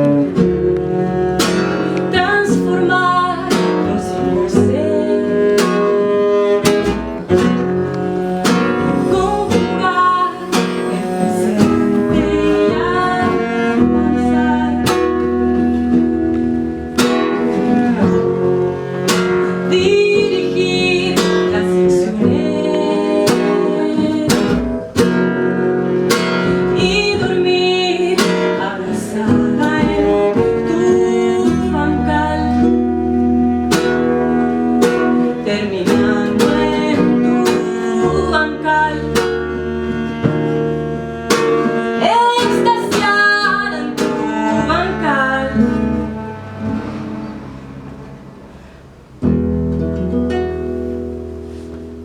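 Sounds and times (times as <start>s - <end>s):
sustained low notes: 0.0s - 25.0s
plucked acoustic guitar: 0.0s - 52.0s.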